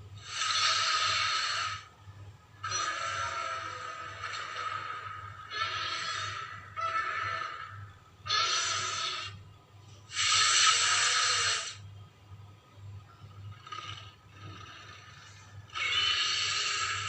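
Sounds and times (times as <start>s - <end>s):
monster roar: 2.6s - 9.4s, 15.7s - 17.0s.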